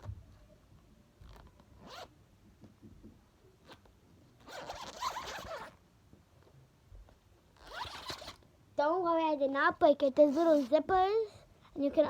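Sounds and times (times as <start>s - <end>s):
small zipper being pulled open: 1.2s - 2.1s, 3.6s - 5.8s, 7.6s - 8.4s, 10.3s - 10.7s.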